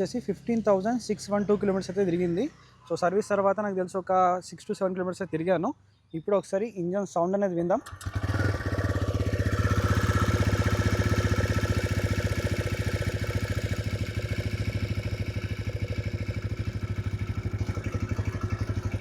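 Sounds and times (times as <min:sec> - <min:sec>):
engine ticking: 0:07.8 - 0:19.0
motorcycle engine idling: 0:07.8 - 0:19.0.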